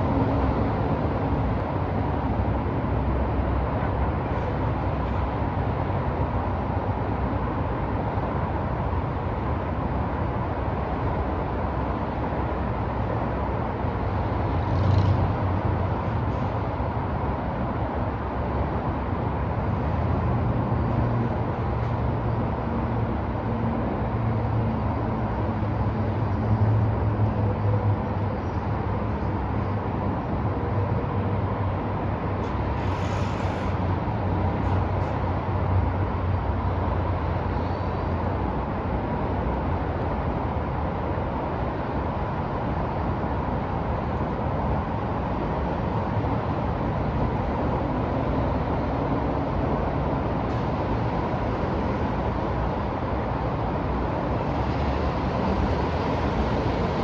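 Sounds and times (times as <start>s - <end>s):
street traffic noise: 0.0s - 57.0s
short hiss: 32.8s - 33.8s.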